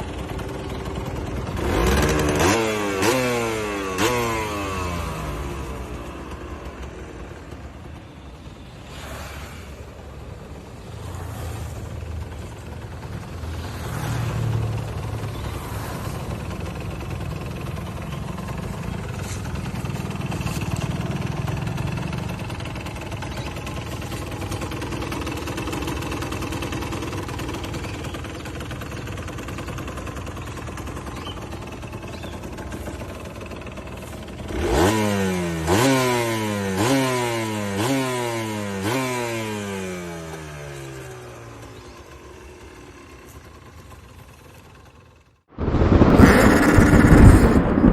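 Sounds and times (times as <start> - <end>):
two-stroke motorcycle engine: 0.0 - 47.9
engine revving: 1.4 - 7.0, 10.8 - 22.6, 33.4 - 42.0, 45.6 - 47.9.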